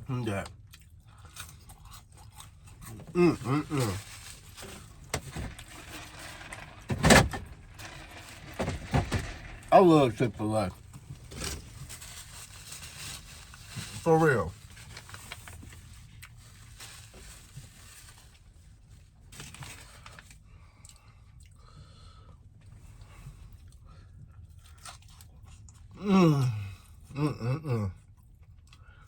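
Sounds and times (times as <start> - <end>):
person chewing and crunching: 0.3 - 5.1, 24.5 - 26.0.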